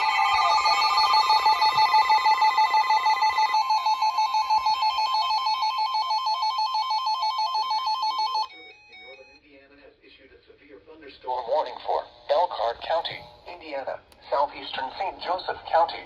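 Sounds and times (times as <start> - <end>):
higher tone: 0.0 - 6.5
harsh continuous alert tone: 0.0 - 9.4.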